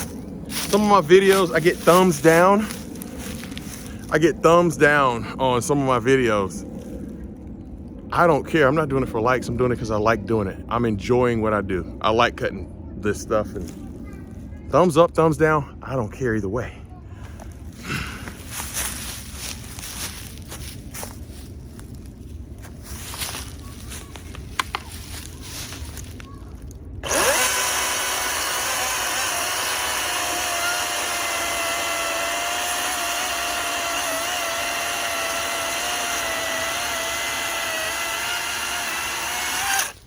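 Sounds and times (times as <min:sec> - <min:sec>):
chainsaw cutting through log: 0:00.0 - 0:03.9, 0:27.0 - 0:40.0.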